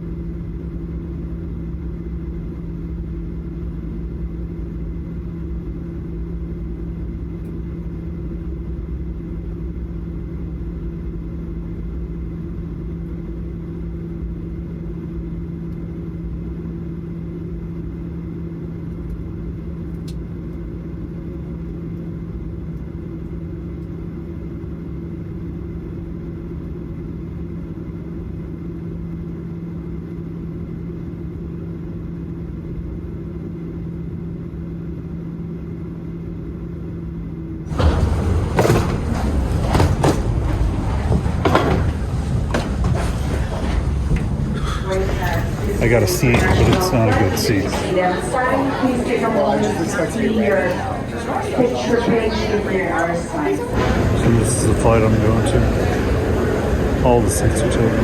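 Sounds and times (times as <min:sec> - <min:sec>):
airplane cabin engine drone: 0:00.0 - 0:58.0.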